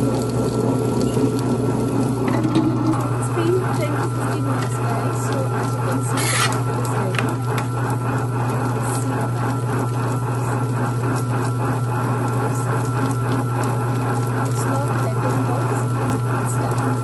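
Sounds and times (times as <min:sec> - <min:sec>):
electric motor hum: 0:00.0 - 0:17.0
grinding stones scraping drum: 0:01.1 - 0:08.0.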